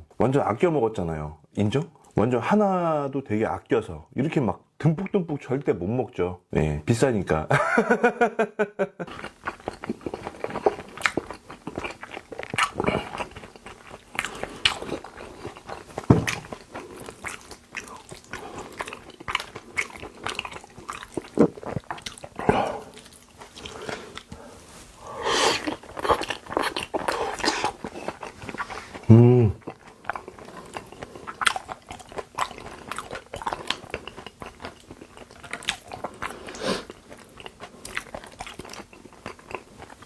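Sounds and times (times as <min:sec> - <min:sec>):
lip smacking: 0:09.1 - 0:40.0
wet chewing: 0:09.1 - 0:40.0.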